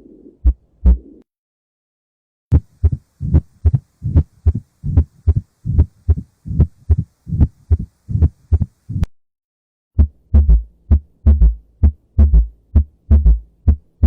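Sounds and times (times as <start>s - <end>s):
heartbeat thumps: 0.4s - 1.2s, 2.5s - 9.1s, 10.0s - 14.0s.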